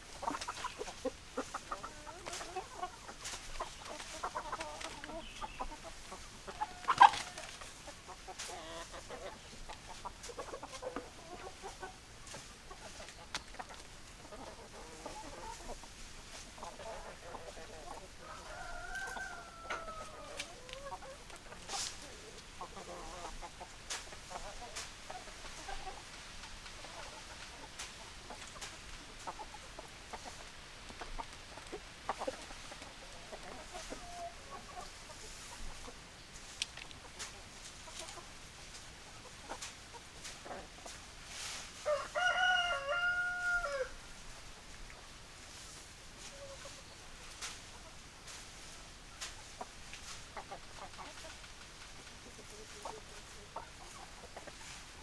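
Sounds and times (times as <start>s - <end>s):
chickens clucking: 0.0s - 55.0s
rooster crowing: 18.2s - 20.3s, 41.9s - 44.0s.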